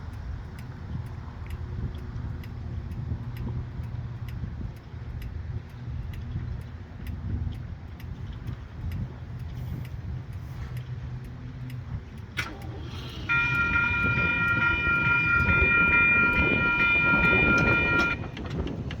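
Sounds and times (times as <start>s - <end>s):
horn blast of several notes: 13.2s - 18.2s.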